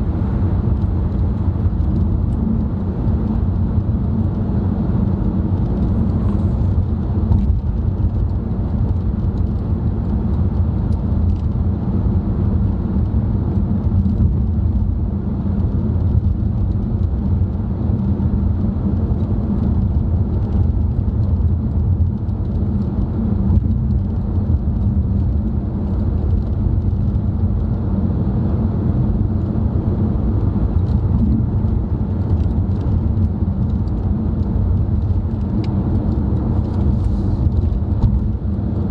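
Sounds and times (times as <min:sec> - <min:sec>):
road and engine drone inside car: 0:00.0 - 0:38.9.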